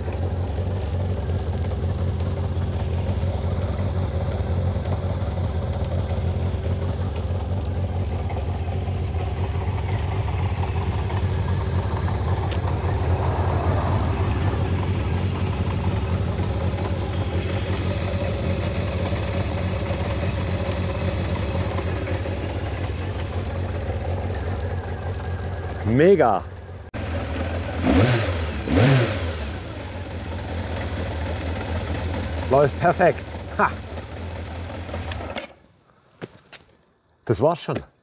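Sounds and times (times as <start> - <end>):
motorcycle engine idling: 0.0 - 35.7.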